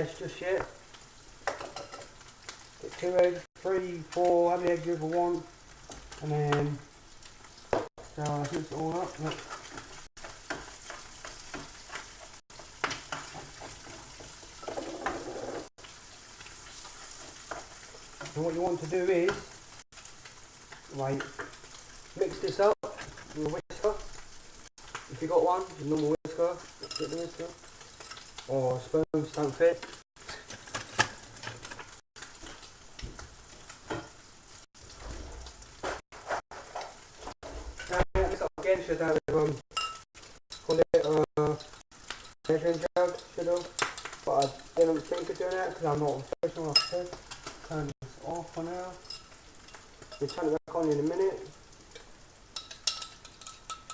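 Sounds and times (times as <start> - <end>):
food sizzling in a pan: 0.0 - 53.9
utensil tapping cup stirring eggs: 52.0 - 53.9.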